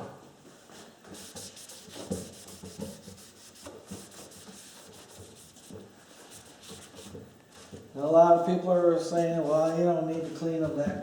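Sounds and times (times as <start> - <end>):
rubbing and scraping strokes: 1.0 - 7.7.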